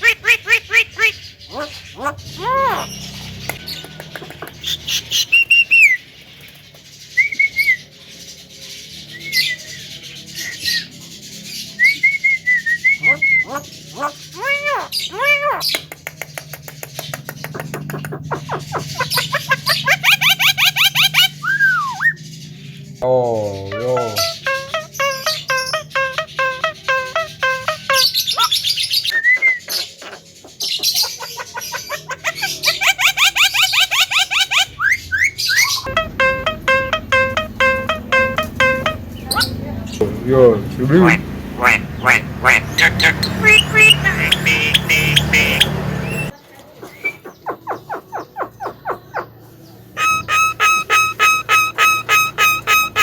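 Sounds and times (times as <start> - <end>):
bird harsh chirps and clicks: 0.0 - 7.9, 13.0 - 22.2, 23.0 - 40.1, 41.0 - 49.4, 50.0 - 53.0
bird whistle rising and falling: 4.6 - 6.0, 19.8 - 22.2, 33.0 - 39.5, 50.0 - 53.0
bird whistled phrases: 4.6 - 6.0, 7.2 - 7.8, 9.1 - 10.9, 11.7 - 15.9, 18.3 - 22.2, 23.4 - 30.2, 31.0 - 39.6, 42.8 - 49.3, 50.0 - 53.0
myna ringing calls: 23.0 - 40.0, 40.9 - 46.3, 50.0 - 53.0.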